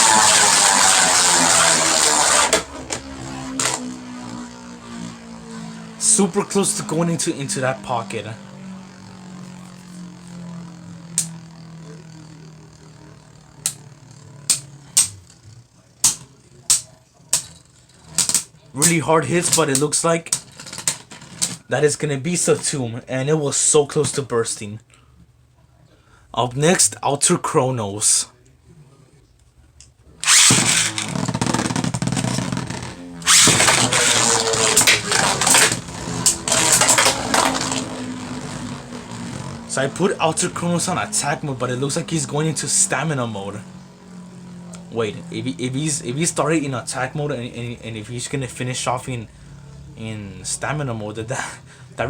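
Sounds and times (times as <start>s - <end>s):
spinning tops whirring: 0.0s - 21.6s, 30.2s - 47.9s.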